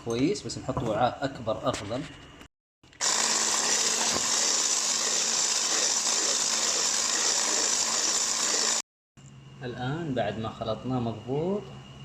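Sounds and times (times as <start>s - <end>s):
electric hand mixer whirring: 3.0s - 8.9s.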